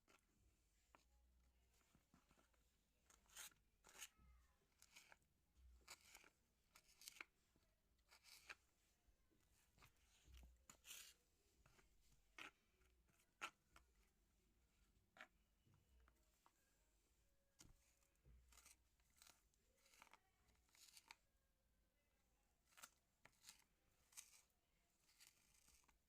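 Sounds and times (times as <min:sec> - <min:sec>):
kitchen food preparation scrapes: 0:10.7 - 0:12.7, 0:23.4 - 0:26.0.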